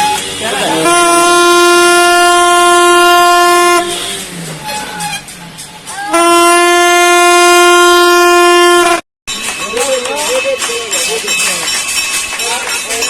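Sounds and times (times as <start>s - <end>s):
ship's horn blasts: 0.0s - 9.0s.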